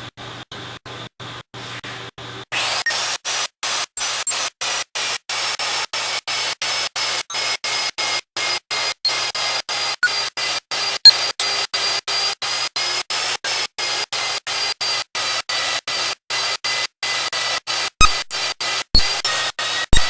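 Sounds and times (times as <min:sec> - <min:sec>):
magnetic drill cutting steel: 0:04.0 - 0:04.4, 0:17.7 - 0:20.0.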